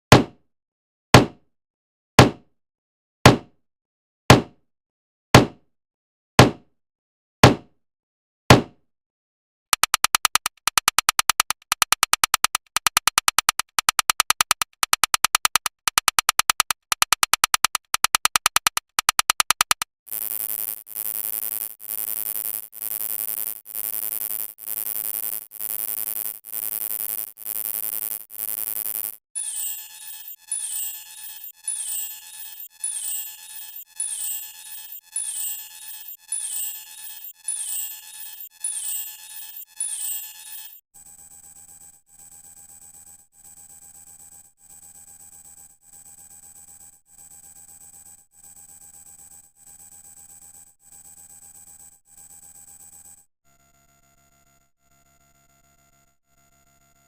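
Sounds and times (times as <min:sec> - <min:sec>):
fast electronic clicks: 0:09.7 - 0:40.8.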